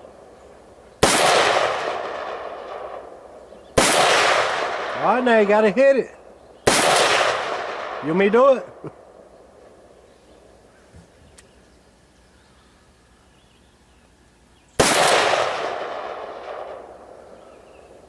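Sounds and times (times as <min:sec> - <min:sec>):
rifle shot with rolling echo: 0:00.0 - 0:10.7, 0:14.8 - 0:18.0.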